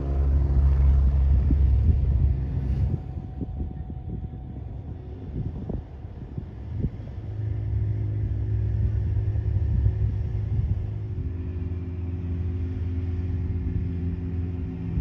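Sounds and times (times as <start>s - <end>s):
light aircraft engine rumbling: 0.0s - 15.0s.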